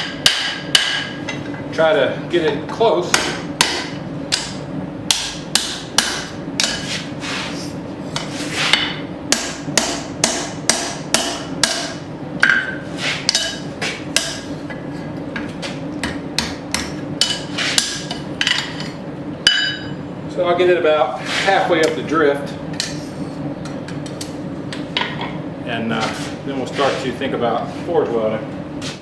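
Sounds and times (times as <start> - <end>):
hammer striking hot steel: 0.0 - 1.4, 3.1 - 6.8, 8.7 - 14.5, 16.0 - 18.7, 19.5 - 19.9
low background hum: 0.0 - 29.0.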